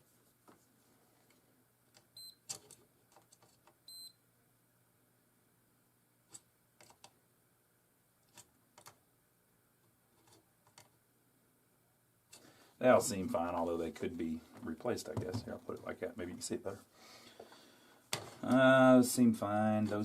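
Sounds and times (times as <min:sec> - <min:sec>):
multimeter beeps: 0:02.1 - 0:02.5, 0:03.8 - 0:04.2.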